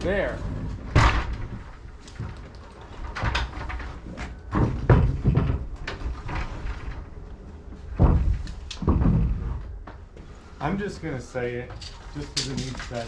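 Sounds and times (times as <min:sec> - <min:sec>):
wood thumping against wood: 0:03.2 - 0:06.6, 0:07.8 - 0:10.3.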